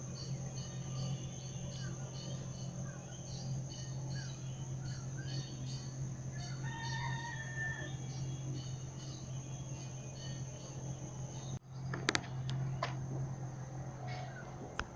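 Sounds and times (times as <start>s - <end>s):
high bird chirps: 0.0s - 12.0s
insect drone: 0.0s - 14.9s
low hum: 0.0s - 14.9s
rooster crowing: 6.2s - 9.1s.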